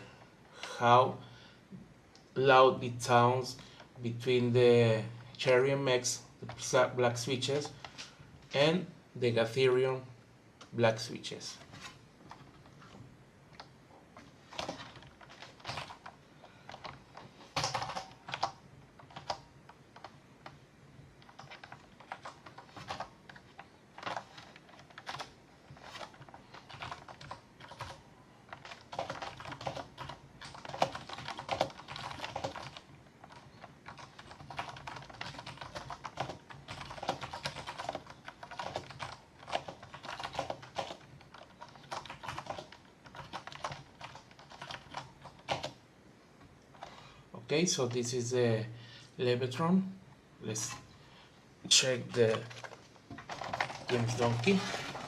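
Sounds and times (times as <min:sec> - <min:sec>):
mechanical keyboard clacks: 0:14.5 - 0:19.4, 0:21.2 - 0:45.8, 0:52.1 - 0:55.0.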